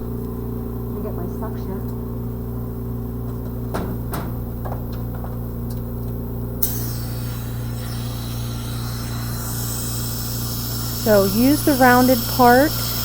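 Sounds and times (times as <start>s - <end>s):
low hum: 0.0s - 13.0s
dental suction hiss: 6.6s - 13.0s.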